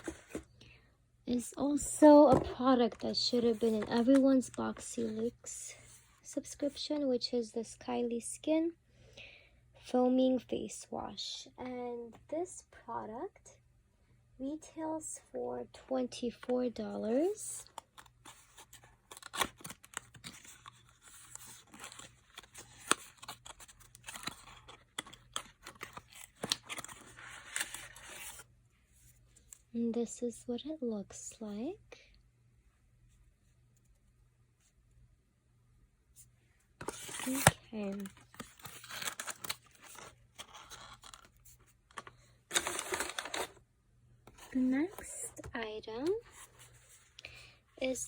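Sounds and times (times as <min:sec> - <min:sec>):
faint packaging rustle: 0:00.0 - 0:00.6, 0:17.4 - 0:29.7, 0:36.2 - 0:43.6, 0:44.3 - 0:47.6
packaging clicks taps and scrapes: 0:41.9 - 0:43.6.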